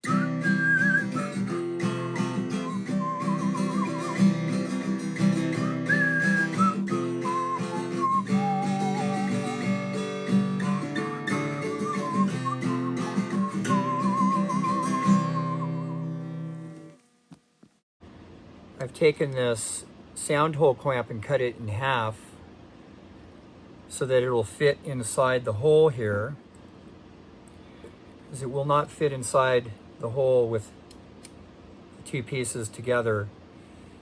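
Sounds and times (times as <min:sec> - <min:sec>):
acoustic guitar music: 0:00.0 - 0:17.3
wavering lead melody: 0:01.2 - 0:16.5.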